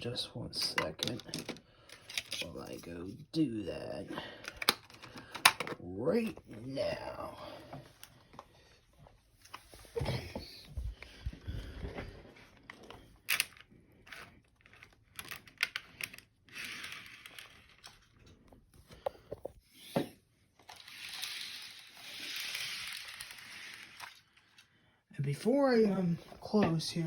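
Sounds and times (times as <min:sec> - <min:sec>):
small objects clicking and knocking: 0:00.6 - 0:02.8, 0:04.4 - 0:06.5, 0:12.6 - 0:19.5, 0:20.6 - 0:24.7
rustling: 0:20.6 - 0:24.7.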